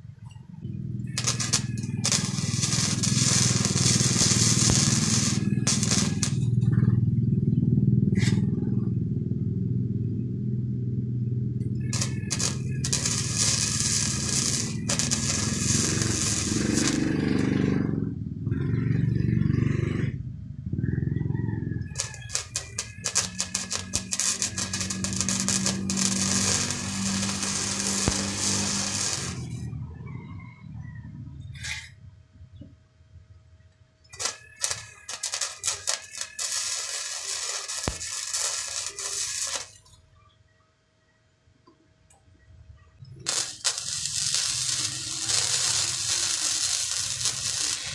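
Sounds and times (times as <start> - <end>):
welding arc hissing and crackling: 1.0 - 6.6, 11.8 - 17.5, 21.9 - 29.7, 34.1 - 39.8, 43.2 - 47.9.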